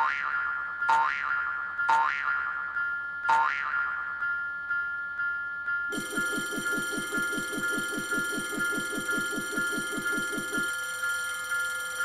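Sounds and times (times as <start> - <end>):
crossing warning bell ringing: 2.6 - 12.0.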